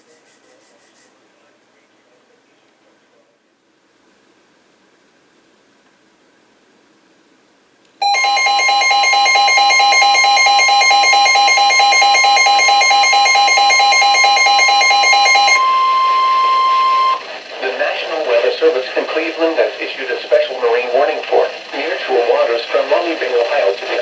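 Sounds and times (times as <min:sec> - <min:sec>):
steady electronic tone: 0:08.0 - 0:17.4.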